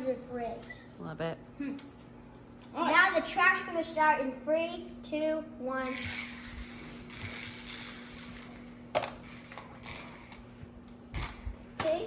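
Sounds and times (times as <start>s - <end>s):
toy car clicking and rattling: 5.8s - 8.6s.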